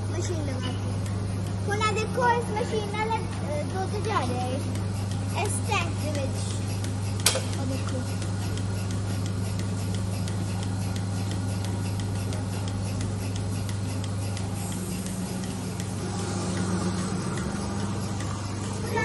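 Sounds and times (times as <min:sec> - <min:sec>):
milking machine humming: 0:00.0 - 0:19.0
pulsator ticking: 0:00.0 - 0:19.0.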